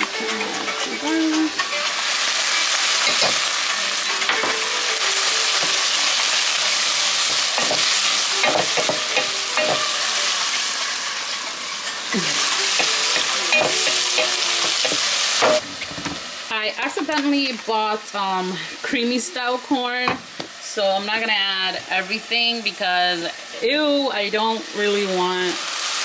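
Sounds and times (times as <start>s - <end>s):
vegetables sizzling in oil: 0.0s - 26.0s
utensil scraping a pot: 11.8s - 15.6s.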